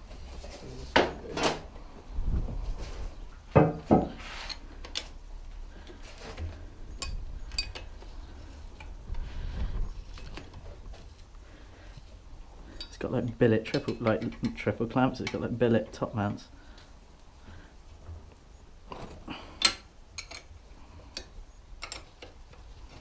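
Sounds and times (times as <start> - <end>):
metal tools clinking and knocking: 6.9 - 8.0, 12.7 - 15.6, 18.9 - 23.0.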